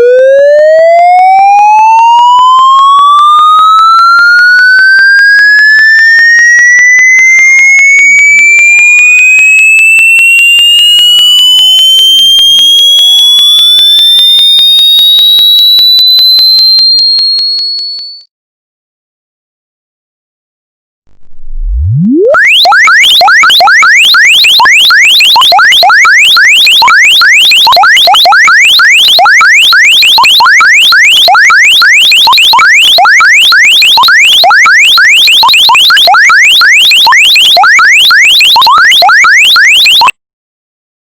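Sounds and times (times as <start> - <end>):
electronic phone ringtone chirps: 22.6 - 40.1.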